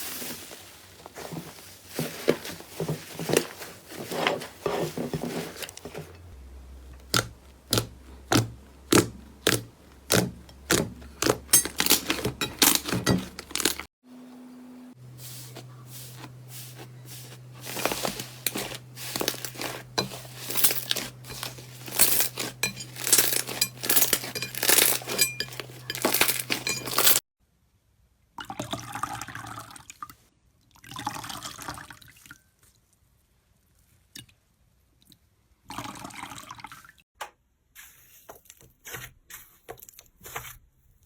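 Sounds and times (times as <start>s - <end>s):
low steady hum: 5.7s - 27.2s.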